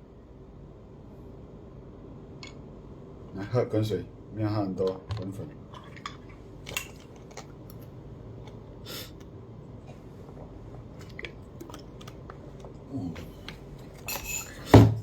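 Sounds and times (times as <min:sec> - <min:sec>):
low room hum: 0:00.0 - 0:15.0.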